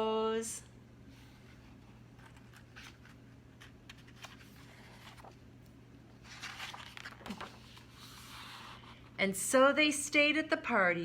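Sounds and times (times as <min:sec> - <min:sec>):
low steady hum: 0:00.0 - 0:11.0
page turning rustle: 0:01.6 - 0:05.4, 0:06.2 - 0:08.9.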